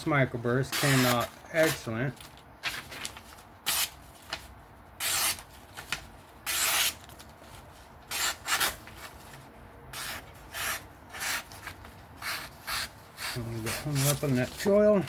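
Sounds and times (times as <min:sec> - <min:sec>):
knife swishing through paper: 0:12.2 - 0:14.8.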